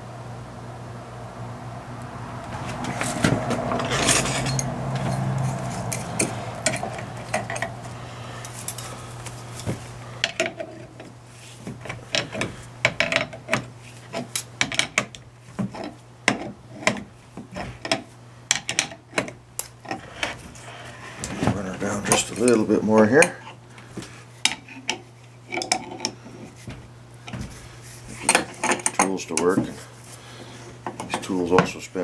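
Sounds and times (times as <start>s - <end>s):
low hum: 0.0s - 13.1s
hand tools clinking on metal: 2.9s - 7.8s, 28.2s - 29.8s.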